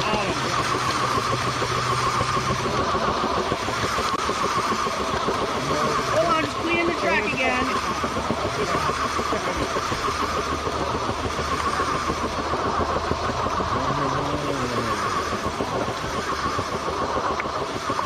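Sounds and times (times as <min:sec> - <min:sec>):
motor drone: 0:00.0 - 0:18.0
faint voice: 0:13.7 - 0:15.0.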